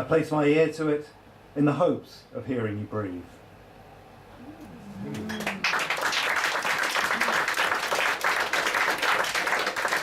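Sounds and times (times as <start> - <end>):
audience applauding: 5.1 - 10.0.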